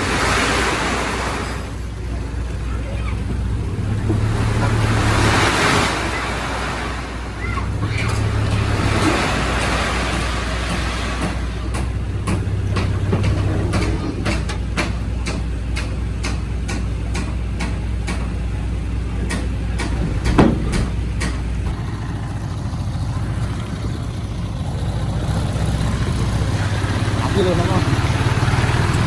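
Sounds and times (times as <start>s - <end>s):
heavy diesel engine running: 0.0s - 29.0s
loud knock: 19.3s - 21.4s.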